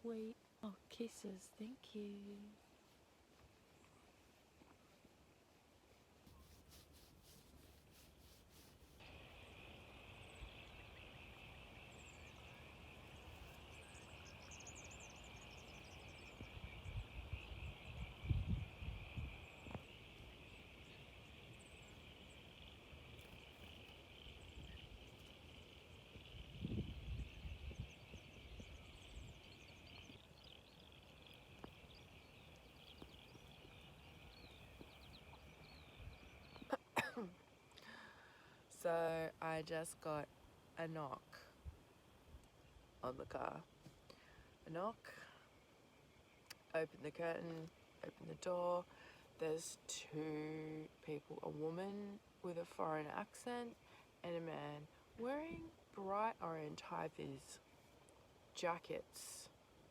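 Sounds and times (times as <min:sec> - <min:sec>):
insects chorus humming: 0:08.0 - 0:59.9
high bird chirps: 0:08.6 - 0:36.9.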